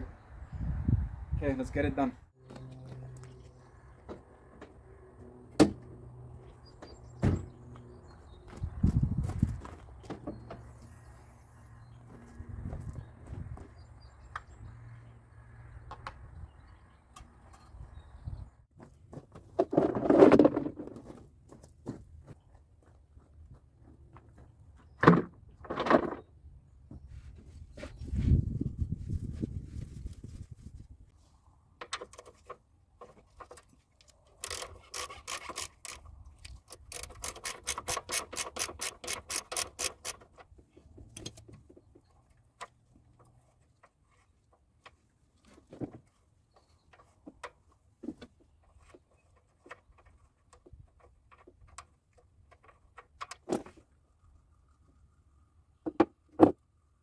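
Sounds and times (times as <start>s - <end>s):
ratchet wrench clicking: 34.3s - 40.2s.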